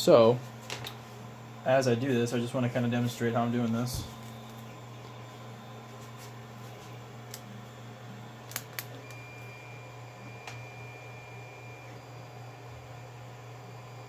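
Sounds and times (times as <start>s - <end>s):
three d printers humming: 0.0s - 14.0s
thin high whine: 9.0s - 14.0s.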